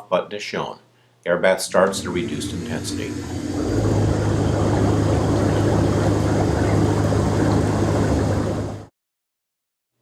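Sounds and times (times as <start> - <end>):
bathtub air blower humming: 1.6 - 8.9
bubbling air and water: 1.7 - 8.9.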